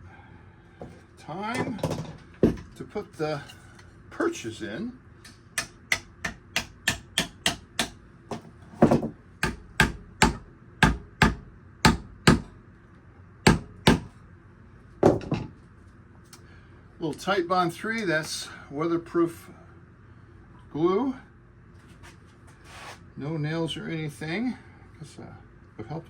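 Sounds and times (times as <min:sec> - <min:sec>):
hammer tapping: 0:05.6 - 0:08.0, 0:09.4 - 0:12.5, 0:13.5 - 0:14.1.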